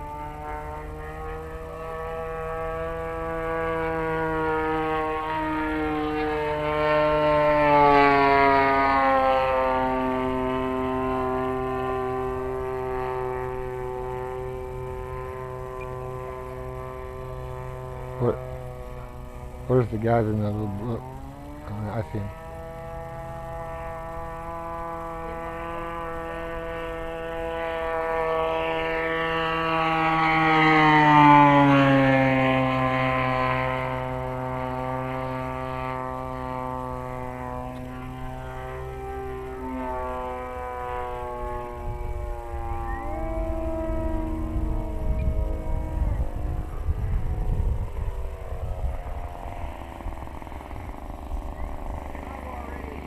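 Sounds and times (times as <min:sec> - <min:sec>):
heavy low rumble: 0:00.0 - 0:53.0
model plane engine passing: 0:00.0 - 0:53.0.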